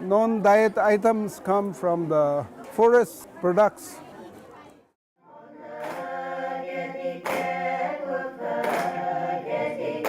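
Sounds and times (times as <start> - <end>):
group singing in chorus: 5.2 - 10.0.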